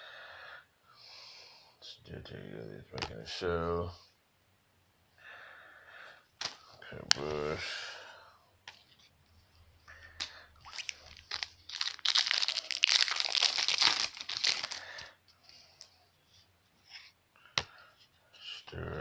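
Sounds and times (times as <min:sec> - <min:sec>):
wrapper tearing and crinkling: 0:10.7 - 0:15.1.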